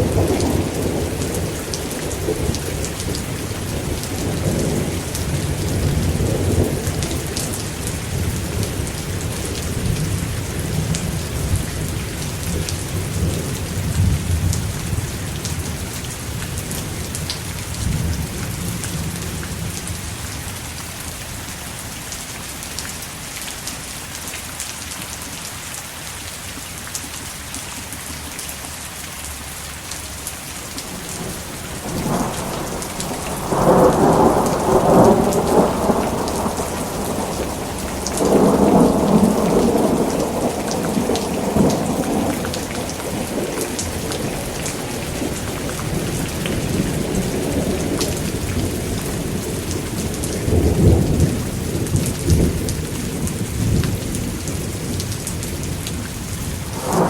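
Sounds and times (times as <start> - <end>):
heavy rain: 0.0 - 57.0
rolling thunder: 30.8 - 57.0.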